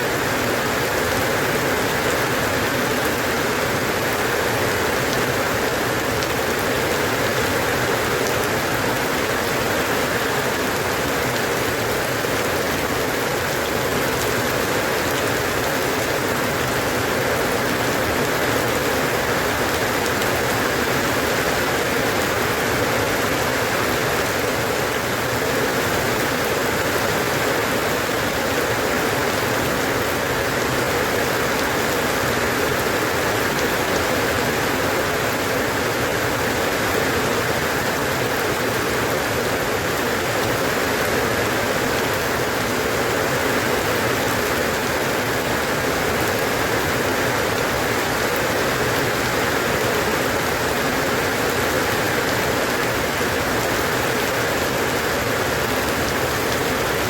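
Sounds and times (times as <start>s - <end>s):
steady rainfall: 0.0s - 57.0s.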